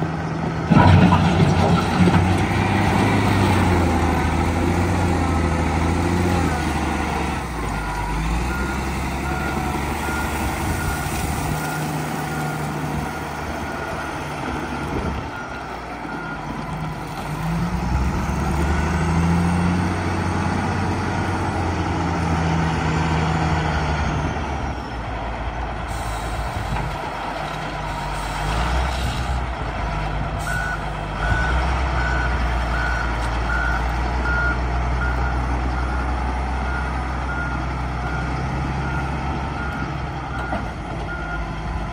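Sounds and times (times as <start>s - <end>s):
diesel loader engine revving: 0.0s - 41.9s
reversing alarm beeping: 7.7s - 16.5s, 30.4s - 41.6s.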